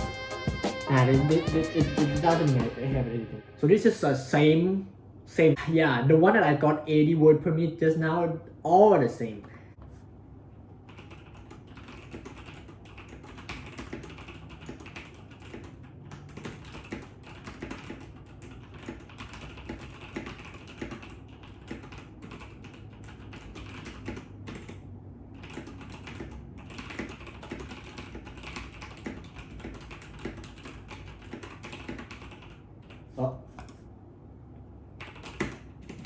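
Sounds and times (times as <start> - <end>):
mechanical keyboard typing: 10.9 - 33.8, 35.0 - 36.0.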